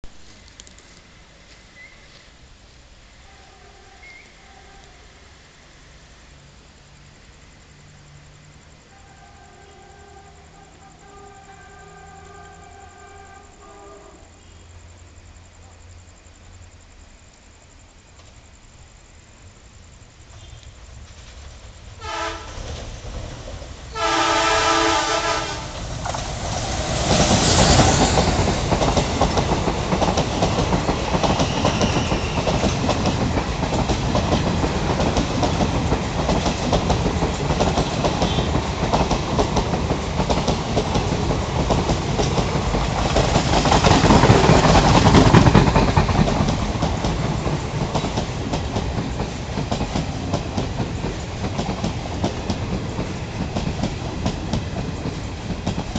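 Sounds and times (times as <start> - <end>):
train rumbling past: 0.0 - 55.9
train horn blast: 9.0 - 14.5, 22.0 - 22.6, 23.9 - 25.8, 38.2 - 38.6
wheels clacking over rail joints: 20.4 - 55.9.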